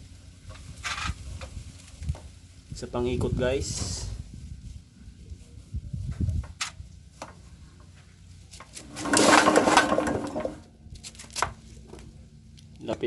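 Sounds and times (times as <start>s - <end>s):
engine turning over clicks: 8.8s - 10.7s.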